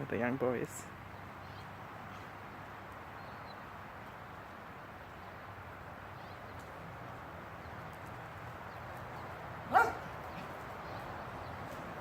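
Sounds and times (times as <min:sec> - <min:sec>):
outdoor background hiss: 0:00.0 - 0:12.0
faint bird chirp: 0:01.1 - 0:02.4, 0:06.1 - 0:06.7.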